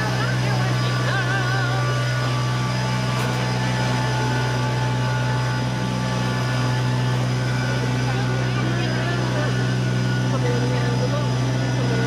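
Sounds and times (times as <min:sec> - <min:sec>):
cart motor droning: 0:00.0 - 0:12.0.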